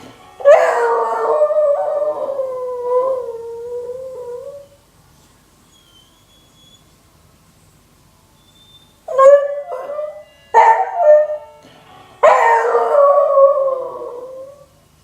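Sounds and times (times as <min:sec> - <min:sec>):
dog howling: 0:00.4 - 0:04.7, 0:12.2 - 0:14.7.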